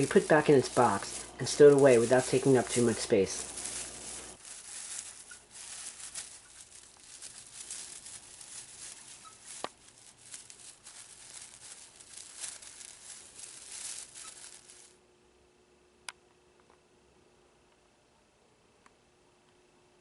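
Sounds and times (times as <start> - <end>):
packaging rustling and crinkling: 0.0 - 15.0.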